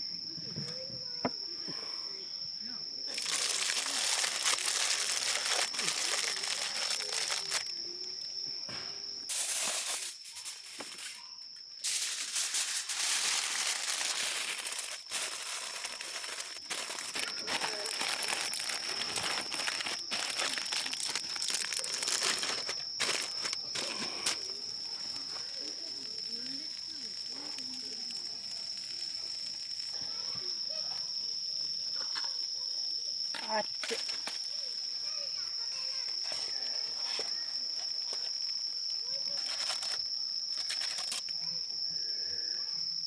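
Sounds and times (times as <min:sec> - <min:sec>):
packaging rustling and crinkling: 0:03.1 - 0:07.7, 0:11.8 - 0:29.9.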